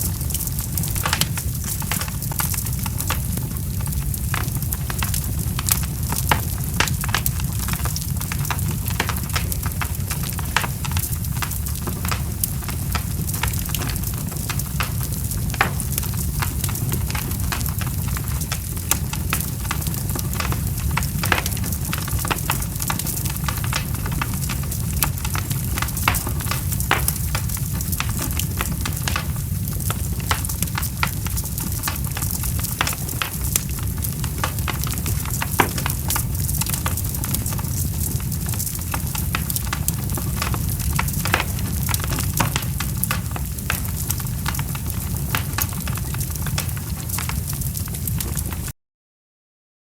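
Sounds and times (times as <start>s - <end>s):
fire crackling and popping: 0.0s - 48.7s.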